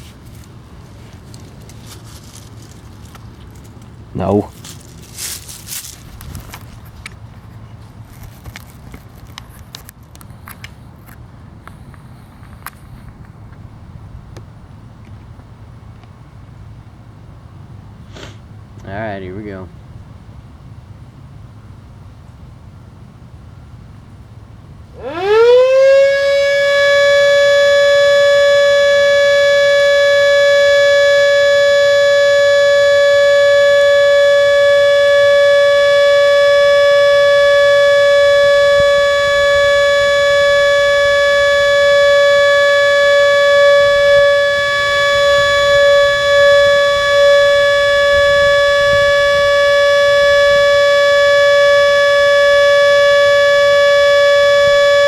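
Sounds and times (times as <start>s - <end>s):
warning siren steady tone: 24.9s - 55.0s.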